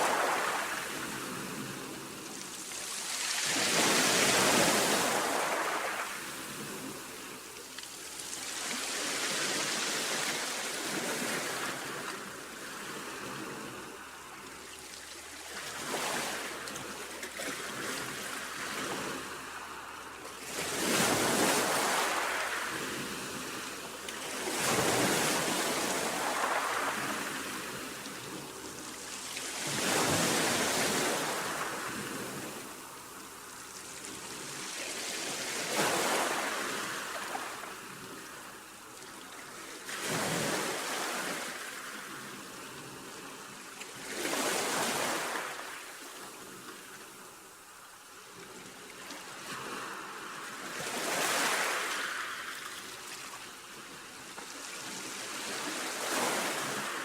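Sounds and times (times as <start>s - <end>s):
sea waves breaking: 0.0s - 38.2s.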